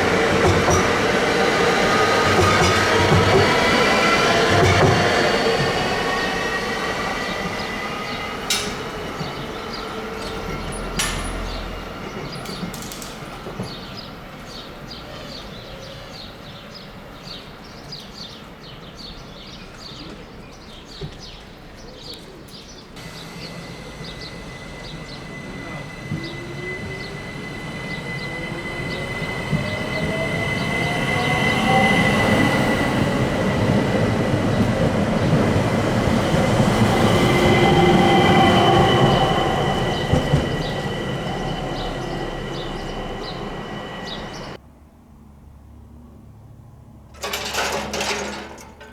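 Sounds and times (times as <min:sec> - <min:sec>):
electric train motor whine: 0:00.0 - 0:14.4, 0:23.0 - 0:44.6
train wheels clicking over rail joints: 0:00.0 - 0:16.0, 0:19.5 - 0:44.6, 0:47.1 - 0:48.9
steady high whistle: 0:23.0 - 0:32.9.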